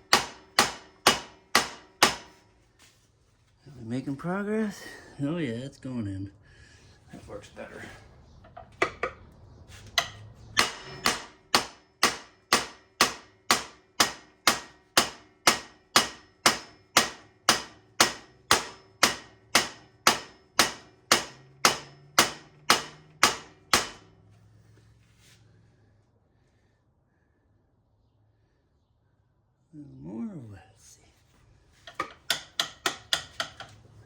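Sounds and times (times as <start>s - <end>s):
hammer striking metal: 0.0s - 2.5s, 10.0s - 24.2s, 31.9s - 33.9s.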